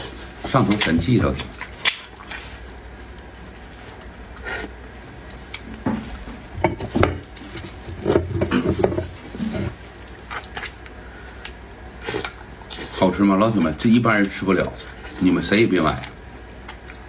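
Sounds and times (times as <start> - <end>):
wet sucking and chewing: 1.5 - 5.7, 9.3 - 13.0.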